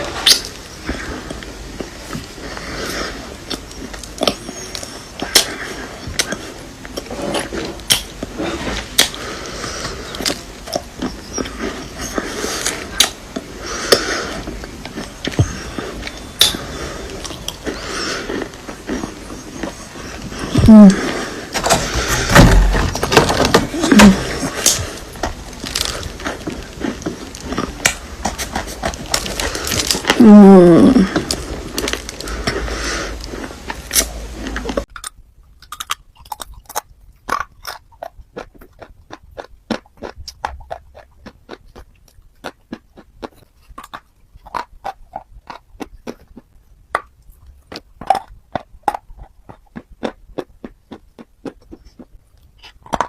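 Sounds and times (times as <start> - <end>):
low voice-like hum: 12.8 - 34.8.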